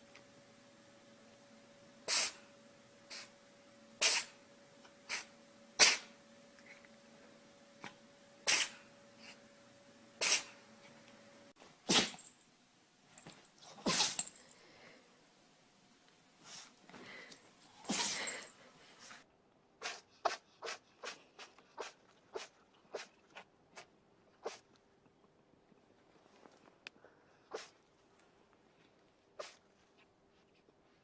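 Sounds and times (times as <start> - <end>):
pet sneezing: 2.1 - 2.4, 4.0 - 4.4, 5.1 - 6.1, 8.4 - 8.8, 10.2 - 10.6, 11.8 - 12.3, 13.6 - 14.4, 17.8 - 18.5, 19.8 - 23.2, 23.8 - 24.7, 27.5 - 27.8, 29.4 - 29.6.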